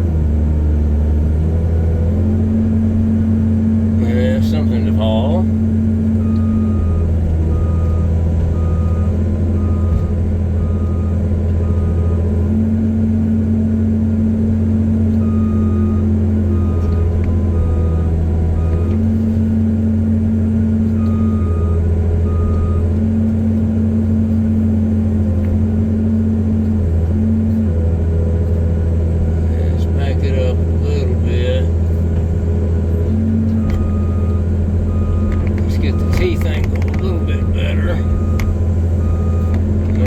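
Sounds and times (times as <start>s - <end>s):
excavator diesel engine: 0.0s - 40.0s
travel alarm beeping: 6.2s - 12.2s, 15.2s - 19.0s, 21.0s - 22.9s, 33.6s - 40.0s.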